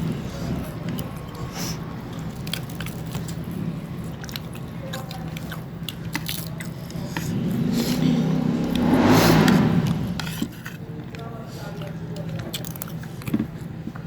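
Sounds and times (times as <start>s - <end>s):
people chewing food: 0.0s - 14.0s
steady low hum: 5.6s - 10.6s.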